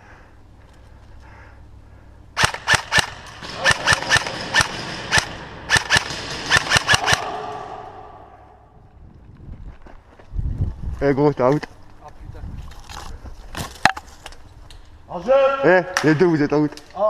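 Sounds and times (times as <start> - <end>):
airsoft guns firing: 2.4 - 8.6.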